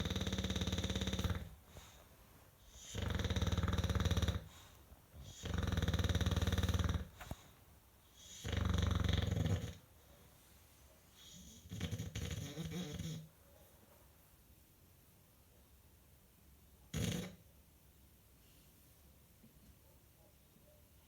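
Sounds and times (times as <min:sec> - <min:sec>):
dog snoring loudly: 0:00.0 - 0:01.6, 0:02.7 - 0:04.6, 0:05.2 - 0:07.2, 0:08.2 - 0:09.8, 0:11.3 - 0:13.3, 0:16.9 - 0:17.4.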